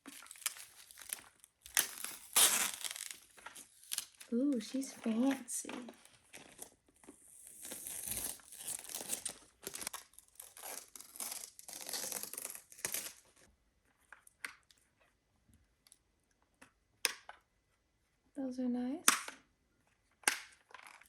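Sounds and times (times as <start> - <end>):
plastic wrapping crinkling and tearing: 0.0 - 13.5.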